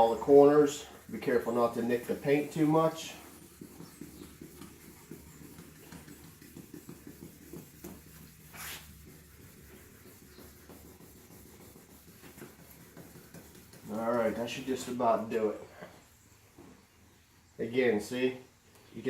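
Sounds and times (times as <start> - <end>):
wet sandpaper rubbing: 0.0 - 15.0.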